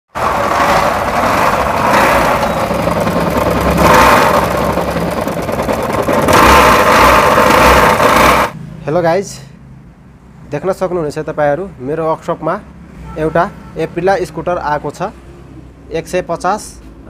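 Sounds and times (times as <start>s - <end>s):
engine revving loudly: 0.1s - 8.6s.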